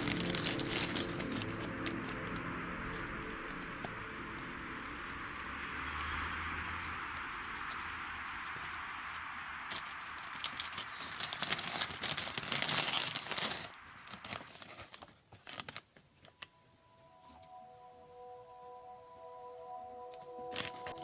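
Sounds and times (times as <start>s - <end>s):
packaging crinkling and rustling: 0.0s - 4.9s, 9.7s - 16.5s, 20.4s - 21.0s
steady hiss: 0.0s - 19.0s.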